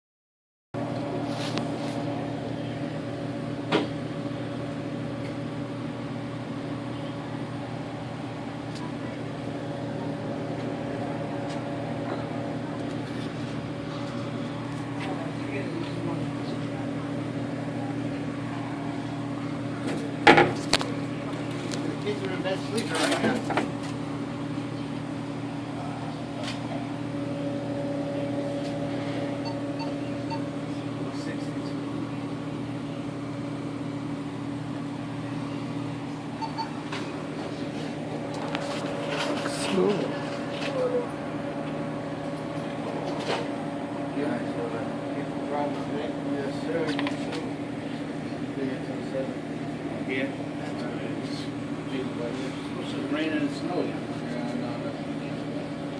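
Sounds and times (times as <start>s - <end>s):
machine hum: 0.8s - 55.9s
faint short beeps: 36.4s - 36.8s.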